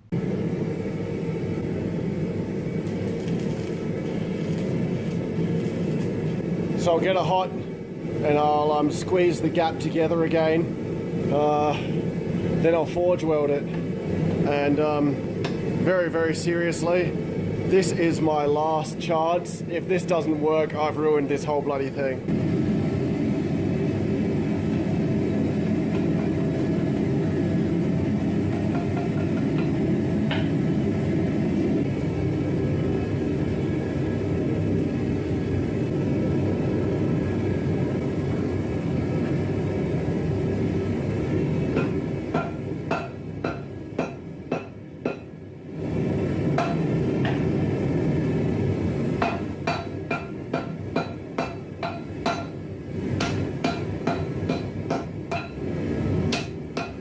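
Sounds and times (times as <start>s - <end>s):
steady low rumble: 0.0s - 44.2s
hammer striking steel on anvil: 15.4s - 15.7s, 28.5s - 30.6s, 41.7s - 45.3s, 46.6s - 47.4s, 49.2s - 52.6s, 53.2s - 55.6s, 56.3s - 57.0s.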